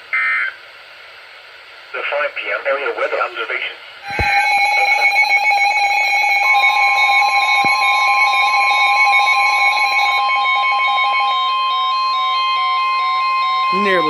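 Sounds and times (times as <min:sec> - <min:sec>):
electronic alert tones: 0:04.0 - 0:14.0
rapid on-off beeping: 0:04.0 - 0:14.0.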